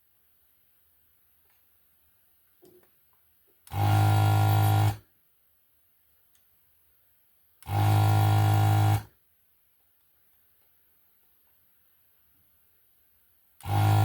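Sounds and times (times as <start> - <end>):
vacuum pump buzzing hum: 3.7 - 5.0, 7.6 - 9.1, 13.6 - 14.0.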